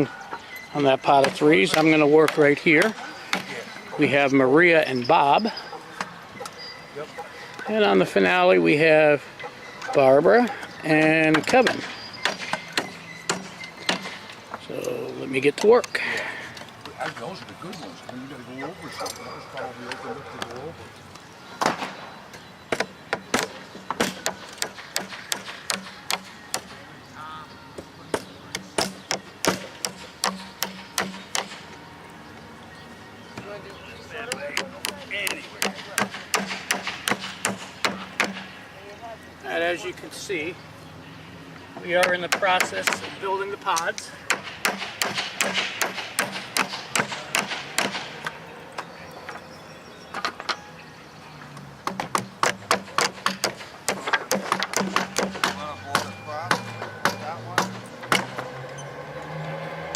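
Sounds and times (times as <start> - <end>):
sharp knocks: 11.2 - 14.4, 22.7 - 26.7, 28.1 - 31.6, 34.3 - 38.6, 44.3 - 48.4, 51.8 - 58.6
hammer knocking nails into wood: 51.8 - 58.4.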